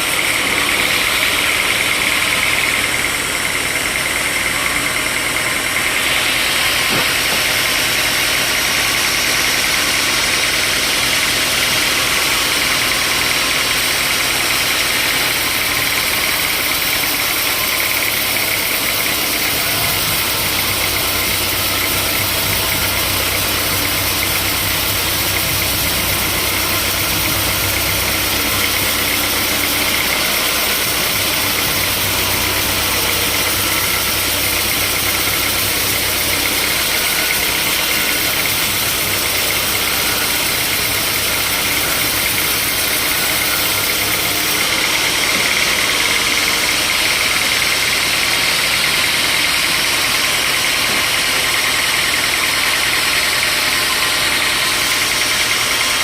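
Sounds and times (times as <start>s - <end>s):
sawmill machinery drone: 0.0s - 56.0s
deep low hum: 18.9s - 42.7s.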